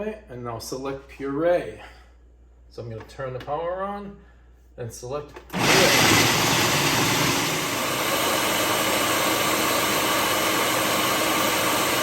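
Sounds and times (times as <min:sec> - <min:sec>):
food processor grinding nuts: 0:05.5 - 0:12.0.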